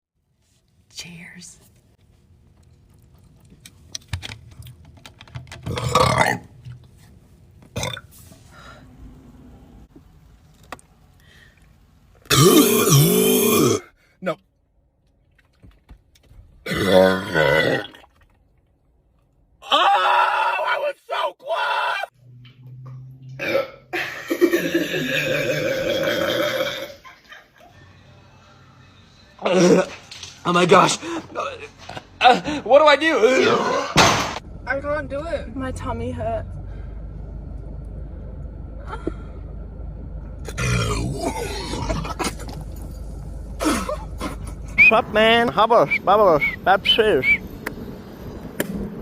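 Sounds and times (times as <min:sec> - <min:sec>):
person burping: 0:05.7 - 0:06.5, 0:07.8 - 0:08.0, 0:12.3 - 0:13.9, 0:16.7 - 0:18.0, 0:23.4 - 0:27.1, 0:40.4 - 0:42.6, 0:43.6 - 0:44.4.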